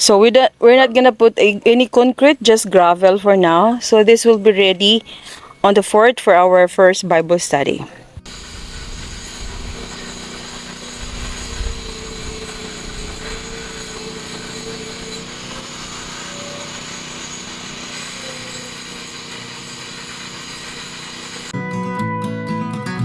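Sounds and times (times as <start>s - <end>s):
acoustic guitar music: 7.5s - 23.0s
motor droning: 8.0s - 21.6s.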